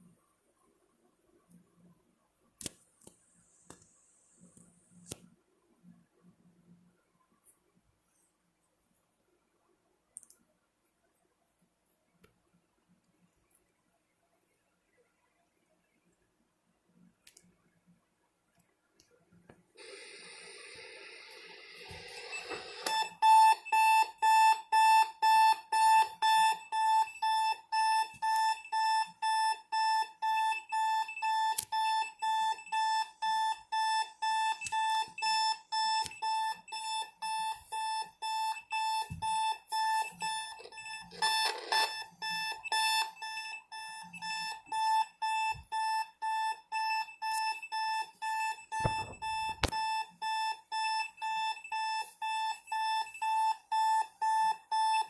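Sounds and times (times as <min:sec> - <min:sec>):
alarm clock beeping: 0:19.8 - 0:55.0.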